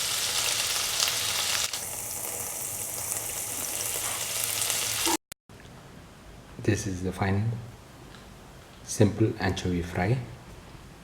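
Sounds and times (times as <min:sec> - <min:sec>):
fish sizzling in oil: 0:00.0 - 0:05.2.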